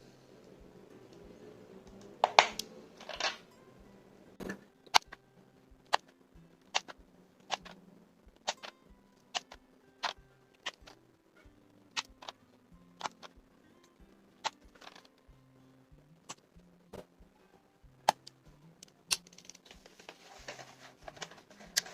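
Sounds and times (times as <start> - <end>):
plastic parts snapping into place: 2.2 - 3.4
rustling scrapes: 19.4 - 21.9.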